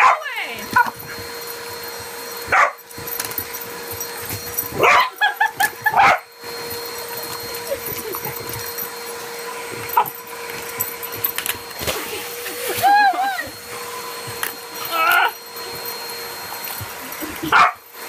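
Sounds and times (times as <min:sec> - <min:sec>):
small dog barking: 0:00.0 - 0:00.9, 0:02.5 - 0:02.8, 0:04.8 - 0:05.2, 0:17.5 - 0:17.8
vacuum cleaner humming: 0:00.0 - 0:18.0
dog yipping: 0:02.5 - 0:02.8, 0:04.8 - 0:06.3, 0:09.9 - 0:10.2, 0:17.5 - 0:17.8.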